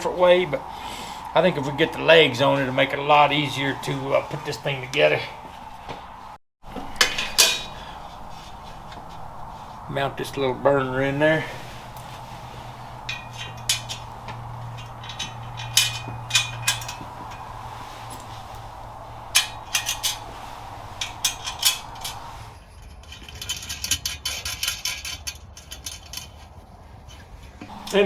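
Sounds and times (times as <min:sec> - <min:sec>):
steady low hum: 0:00.0 - 0:22.6, 0:27.6 - 0:28.0
metal parts clinking: 0:06.8 - 0:09.6, 0:11.3 - 0:26.4.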